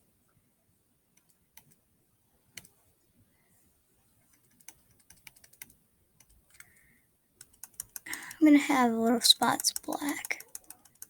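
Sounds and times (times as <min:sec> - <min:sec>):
computer keys clicking: 0:04.3 - 0:06.8, 0:07.4 - 0:08.5, 0:09.3 - 0:11.0.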